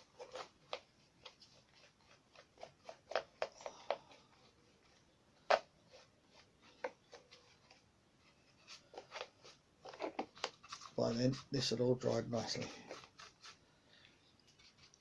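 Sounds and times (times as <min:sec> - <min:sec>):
paintbrush dabbing and stroking paper: 0:05.7 - 0:13.7.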